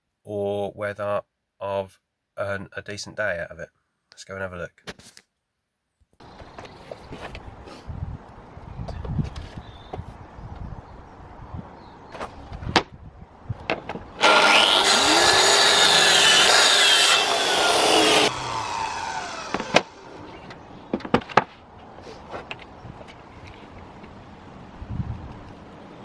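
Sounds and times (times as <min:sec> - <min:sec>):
power tool running: 0:14.2 - 0:20.3.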